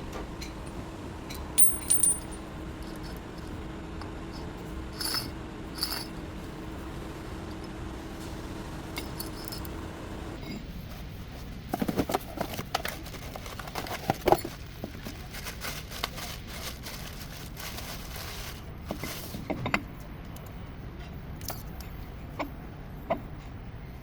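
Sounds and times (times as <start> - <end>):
steady low hum: 0.0 - 24.0
hand tools and metal clanking: 1.3 - 6.2, 9.0 - 9.8, 11.7 - 19.9.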